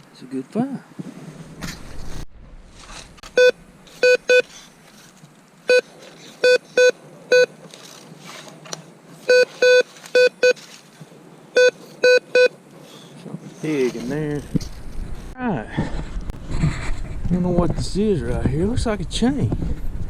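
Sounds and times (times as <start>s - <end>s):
metal detector beeps: 3.4s - 4.5s, 5.7s - 7.5s, 9.3s - 10.6s, 11.6s - 12.6s.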